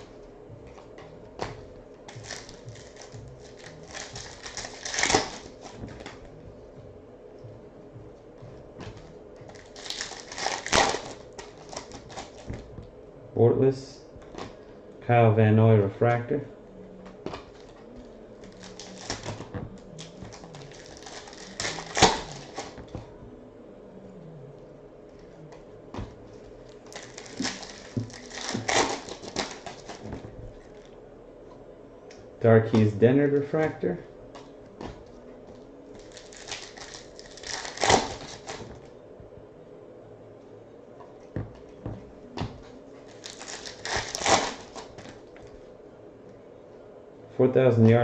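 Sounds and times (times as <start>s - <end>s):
card wrapper clicking and crinkling: 2.1s - 6.2s, 9.5s - 12.6s, 18.5s - 22.8s, 26.9s - 30.1s, 36.0s - 38.8s, 43.1s - 45.2s
cards clicking and rustling: 2.1s - 6.3s, 17.3s - 23.1s.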